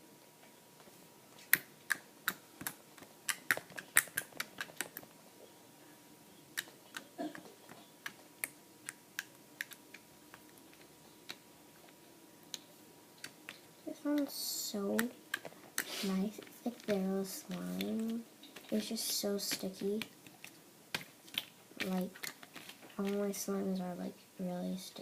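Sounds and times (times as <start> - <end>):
slime clicking and popping: 1.5 - 5.0, 8.0 - 11.4.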